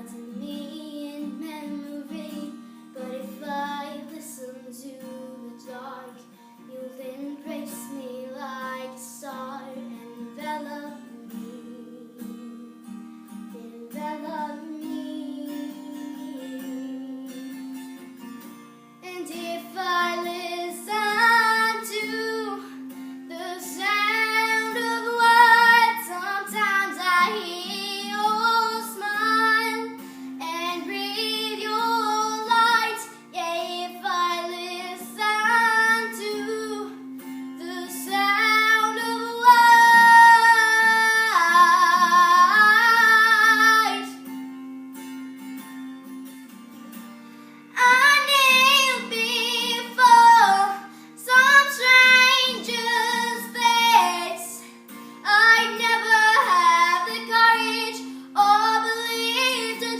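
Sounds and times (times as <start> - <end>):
woman singing: 0.0 - 17.8, 19.0 - 44.3, 47.7 - 59.9
acoustic guitar: 0.0 - 59.9.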